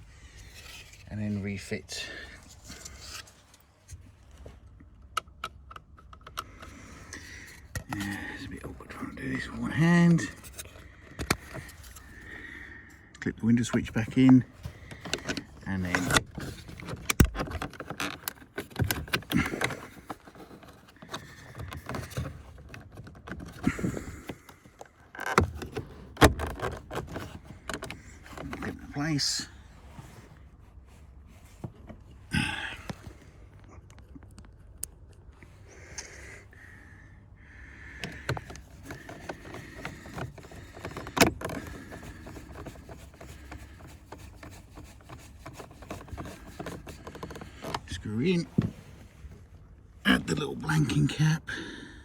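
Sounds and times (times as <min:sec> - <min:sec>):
plastic trim clicks and rubbing: 0:10.3 - 0:12.2, 0:13.6 - 0:28.8, 0:38.0 - 0:48.7
plastic trim clicks and knocks: 0:13.8 - 0:20.2.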